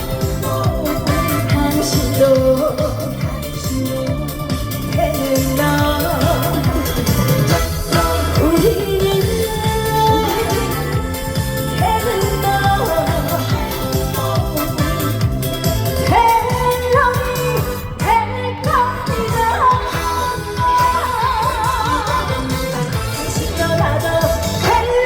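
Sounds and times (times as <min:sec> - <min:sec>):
instrumental trot music: 0:00.0 - 0:25.0
pop backing track with beat: 0:00.0 - 0:25.0
woman singing: 0:00.0 - 0:25.0.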